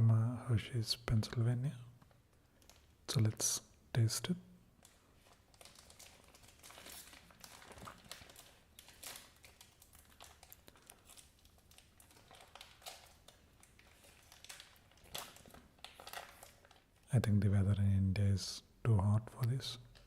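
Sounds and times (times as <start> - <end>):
candy wrapper crinkling: 4.8 - 17.1.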